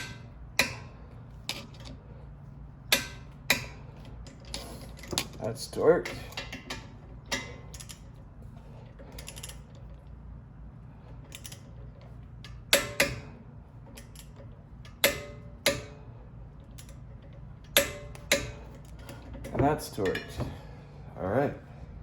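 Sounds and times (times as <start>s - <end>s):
metal tools clinking: 16.7s - 20.6s.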